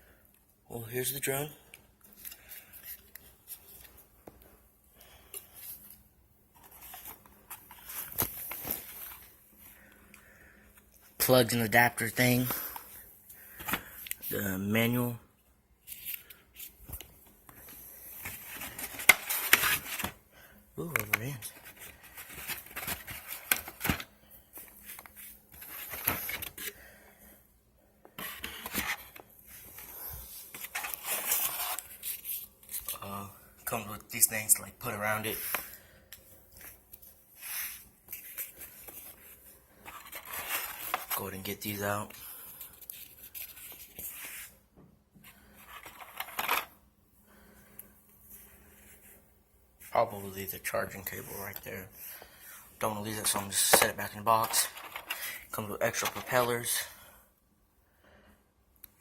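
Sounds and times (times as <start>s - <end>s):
packaging being handled: 20.9s - 26.8s
packaging rustling: 21.0s - 26.8s.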